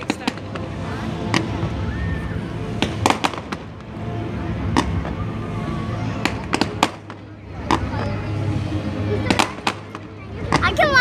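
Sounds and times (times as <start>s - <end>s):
background music: 0.0s - 11.0s
fireworks bangs: 6.1s - 7.9s.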